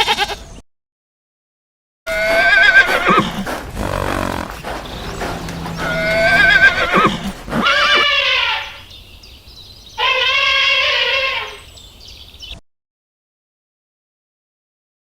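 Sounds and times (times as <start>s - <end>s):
horse whinnying: 2.1s - 8.1s.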